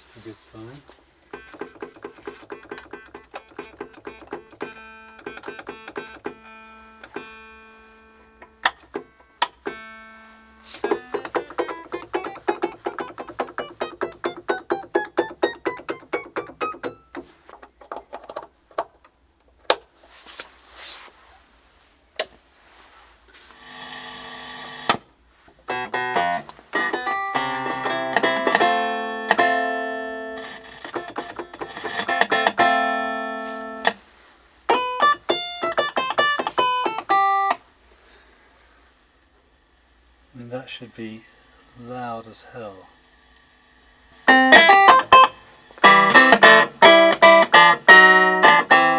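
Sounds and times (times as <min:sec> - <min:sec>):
clavinet notes and chords: 0:01.4 - 0:07.3, 0:10.8 - 0:17.2, 0:25.7 - 0:33.0, 0:44.3 - 0:48.9.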